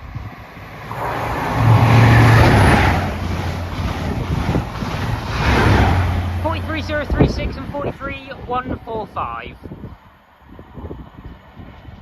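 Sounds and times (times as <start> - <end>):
wheels on rails: 0.0 - 9.2
diesel train passing at speed: 0.0 - 12.0.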